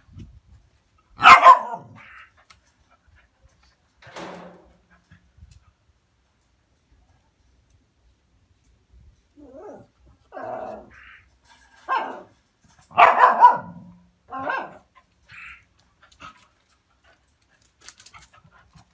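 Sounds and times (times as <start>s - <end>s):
dog barking: 1.2s - 2.1s, 11.9s - 12.3s, 12.9s - 14.8s.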